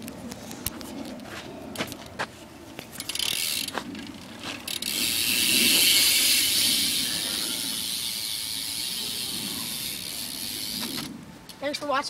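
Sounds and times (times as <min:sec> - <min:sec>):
freewheel pawls buzzing: 0:02.9 - 0:11.2.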